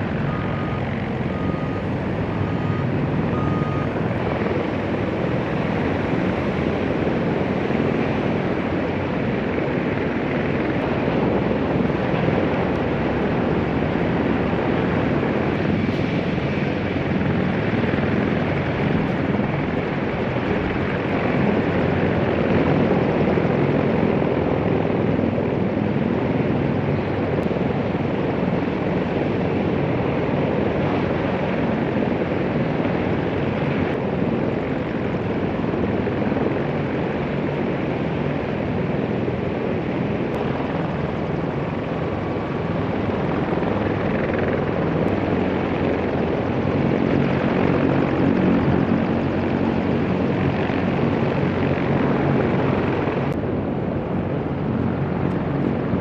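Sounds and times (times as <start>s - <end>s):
helicopter rotor and turbines: 0.0s - 56.0s.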